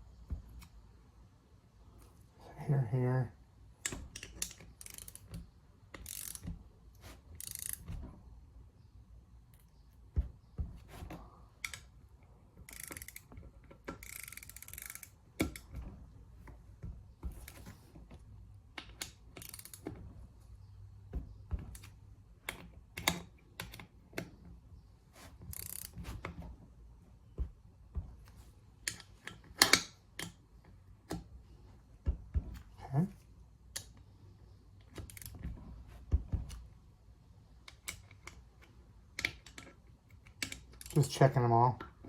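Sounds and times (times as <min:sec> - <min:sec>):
sharp metal clicks: 0:03.8 - 0:06.6, 0:11.6 - 0:15.8, 0:18.7 - 0:19.9
ratchet torque wrench clicking: 0:04.2 - 0:05.3, 0:06.0 - 0:06.5, 0:07.4 - 0:07.8, 0:12.6 - 0:13.3, 0:13.9 - 0:15.6, 0:19.0 - 0:19.8, 0:25.5 - 0:25.9.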